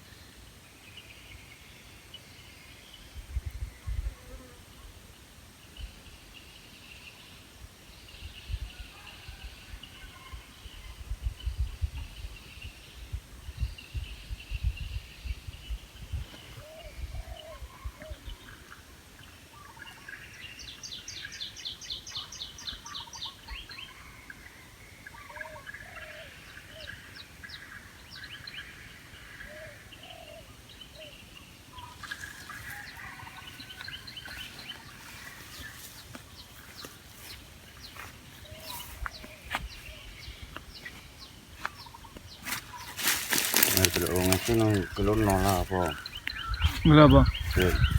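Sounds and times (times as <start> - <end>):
birds chirping: 13.6 - 47.9.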